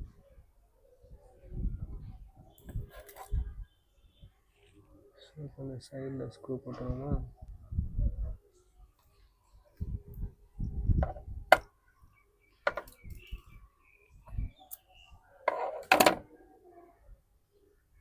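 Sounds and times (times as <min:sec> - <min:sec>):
small tools clicking and knocking: 0:12.7 - 0:13.2, 0:15.5 - 0:16.2.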